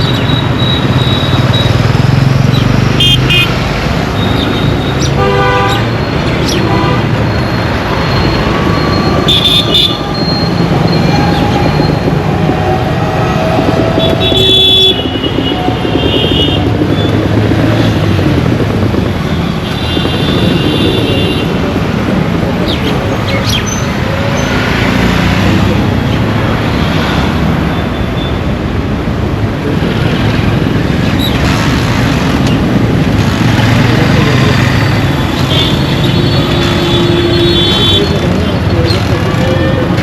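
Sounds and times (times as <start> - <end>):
road traffic rumble: 0.0 - 40.0
vehicle horns honking: 2.9 - 3.6, 5.1 - 6.0, 8.9 - 10.4, 11.0 - 16.7, 35.2 - 40.0.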